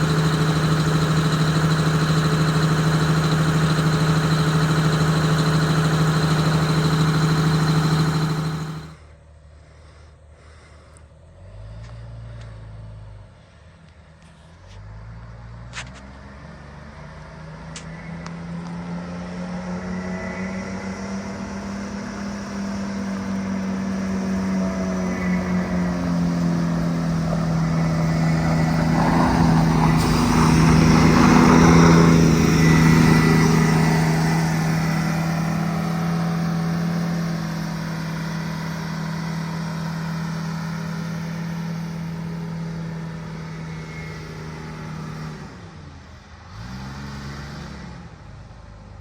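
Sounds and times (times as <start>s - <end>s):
bus engine running: 0.0s - 9.0s, 21.3s - 38.3s.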